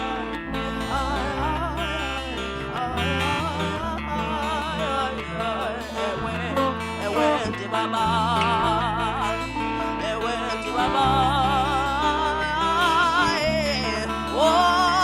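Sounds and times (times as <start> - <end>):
held bass notes: 0.0 - 15.0
plucked strings: 0.0 - 15.0
woman singing with vibrato: 0.0 - 15.0.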